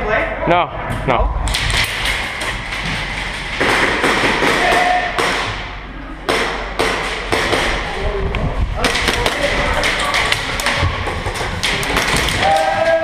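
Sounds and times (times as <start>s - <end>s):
pellets striking walls: 1.5s - 8.0s, 8.8s - 13.0s
airsoft gunfire: 3.6s - 5.7s.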